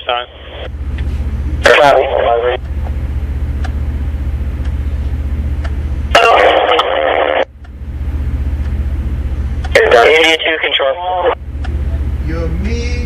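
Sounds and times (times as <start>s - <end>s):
muffled radio transmission: 0.0s - 0.7s, 1.6s - 2.6s, 6.1s - 7.5s, 9.7s - 12.1s
low pulsing hum: 0.0s - 13.0s.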